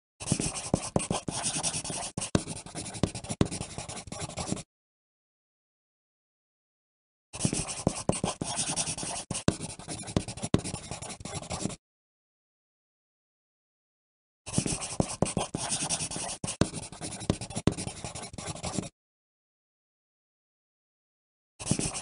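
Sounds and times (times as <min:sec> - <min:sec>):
pencil writing on paper: 0:00.2 - 0:04.7, 0:07.4 - 0:11.8, 0:14.5 - 0:18.9, 0:21.6 - 0:22.0.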